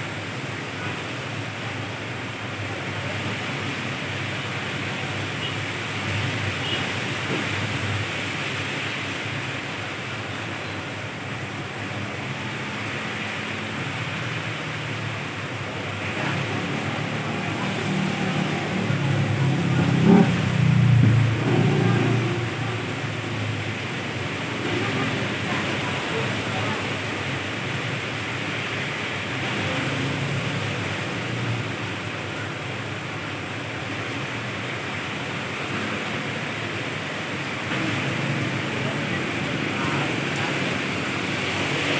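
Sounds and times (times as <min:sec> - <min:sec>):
passing vehicles rumbling: 0:00.0 - 0:41.9
rain falling on a road: 0:00.0 - 0:41.9.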